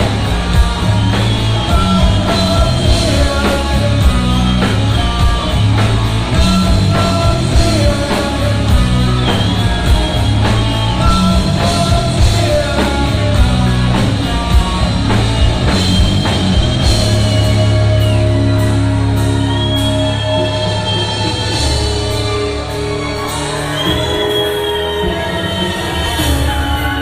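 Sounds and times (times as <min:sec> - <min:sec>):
heavy metal band playing live: 0:00.0 - 0:27.0
long held high notes: 0:14.9 - 0:27.0.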